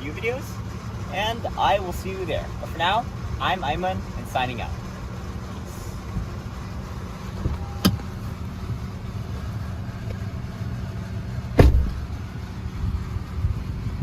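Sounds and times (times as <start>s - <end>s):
vehicle low rumble: 0.0s - 14.0s.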